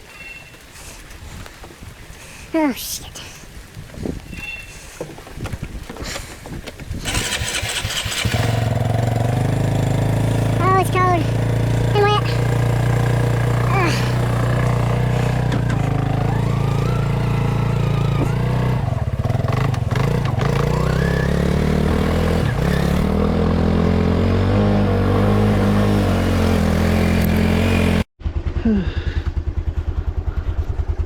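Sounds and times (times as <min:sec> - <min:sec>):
atv engine running: 0:06.9 - 0:31.0.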